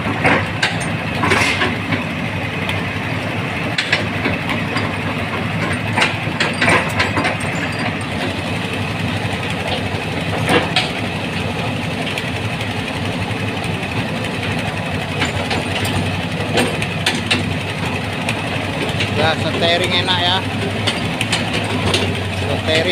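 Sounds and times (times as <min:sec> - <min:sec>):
excavator diesel engine running: 0:00.0 - 0:22.9
sharp metallic clanks: 0:00.1 - 0:02.1, 0:03.7 - 0:08.7, 0:09.6 - 0:11.6, 0:14.4 - 0:22.9.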